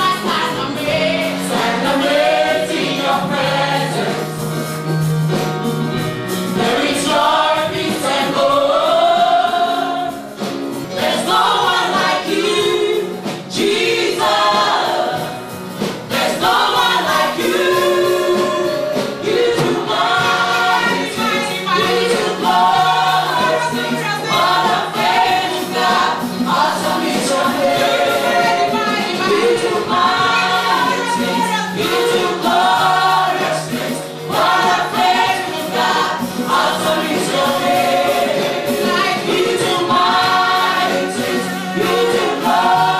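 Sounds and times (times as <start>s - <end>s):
gospel choir singing: 0.0s - 42.9s
held keyboard accompaniment: 0.0s - 42.9s.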